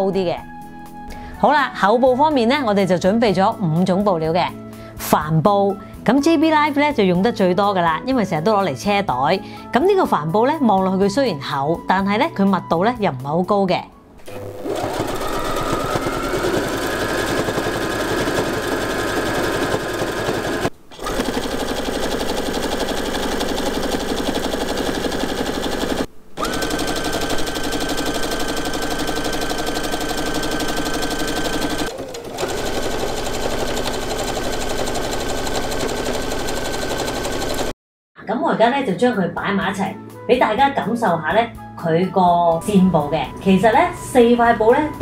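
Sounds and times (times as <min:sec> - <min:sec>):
sewing machine stitching: 0:14.2 - 0:37.7.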